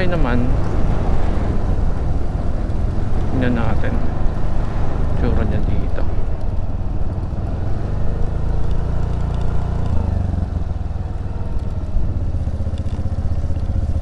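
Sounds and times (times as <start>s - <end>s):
scooter engine running: 6.2s - 14.0s.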